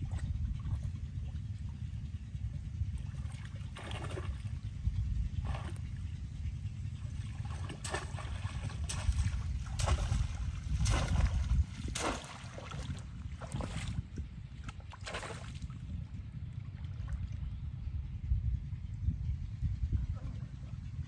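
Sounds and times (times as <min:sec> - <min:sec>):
steady low rumble: 0:00.0 - 0:21.0
splashing in shallow water: 0:03.1 - 0:04.6, 0:05.4 - 0:06.0, 0:07.0 - 0:15.9.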